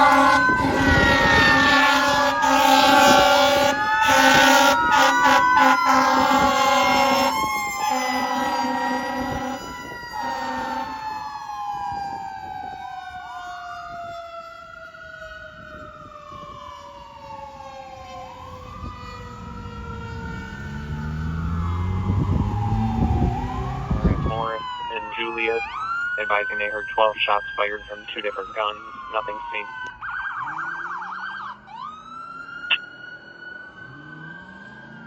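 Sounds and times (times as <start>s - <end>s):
air horn blasts: 0.0s - 11.0s
sirens wailing: 0.0s - 35.0s.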